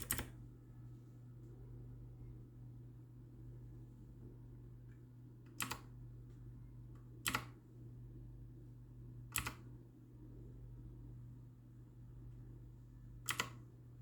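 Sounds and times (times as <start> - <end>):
mechanical keyboard keystrokes: 0.0 - 0.3, 5.5 - 5.9, 7.2 - 7.6, 9.3 - 9.6, 13.2 - 13.6.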